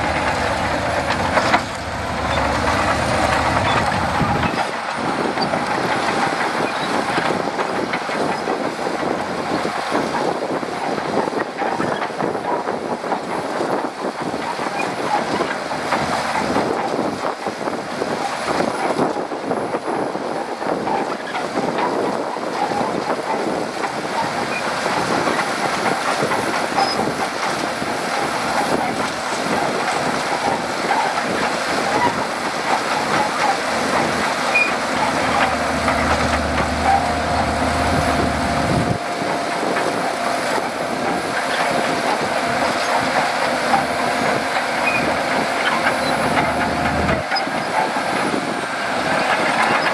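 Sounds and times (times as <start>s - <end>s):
deep rumble: 0.0s - 4.6s, 33.6s - 47.2s
bulldozer diesel engine under load: 0.0s - 49.9s
steel crawler tracks clattering: 0.0s - 49.9s.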